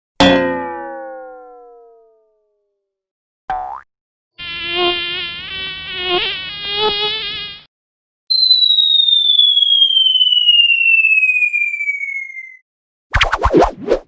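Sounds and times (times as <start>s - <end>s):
cartoon fly buzzing: 3.5s - 3.8s, 4.4s - 7.7s
cartoon falling whistle: 8.3s - 12.6s.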